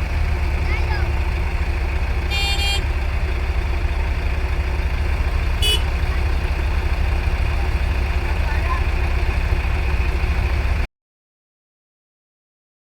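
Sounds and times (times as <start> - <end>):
diesel engine running: 0.0 - 10.9
high-pitched horn toots: 2.3 - 2.9, 5.6 - 6.0.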